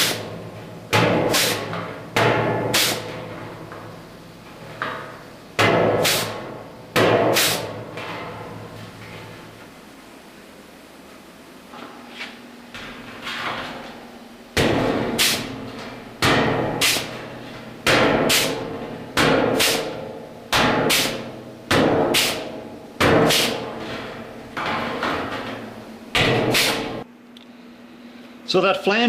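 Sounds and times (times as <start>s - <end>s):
air-powered punch tool clacking: 0.0s - 0.4s, 1.0s - 3.2s, 5.7s - 6.4s, 7.0s - 7.8s, 14.6s - 15.6s, 16.2s - 17.2s, 17.9s - 23.9s, 26.2s - 27.0s.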